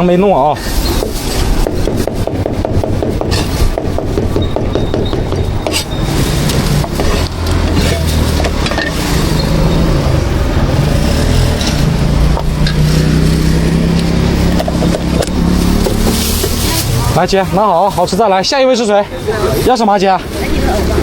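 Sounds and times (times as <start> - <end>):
short knocks: 1.0 - 5.9
vehicle engine running: 1.0 - 18.5.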